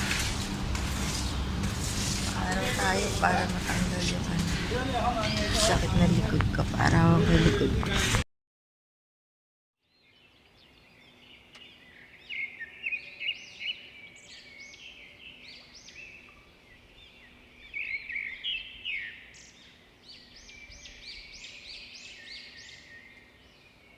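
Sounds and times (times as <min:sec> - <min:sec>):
flock of small birds chirping: 0:00.9 - 0:06.0, 0:09.8 - 0:23.9.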